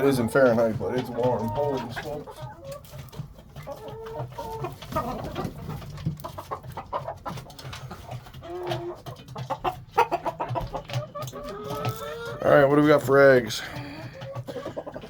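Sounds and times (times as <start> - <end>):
hens clucking: 0.0 - 15.0.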